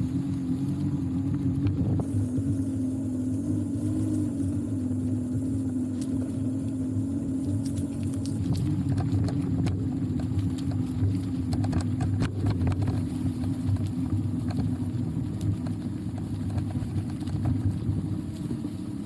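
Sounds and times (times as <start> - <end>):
constant low hum: 0.0 - 19.0
vehicle rumble: 0.0 - 19.0
small clicks and knocks: 7.4 - 18.4.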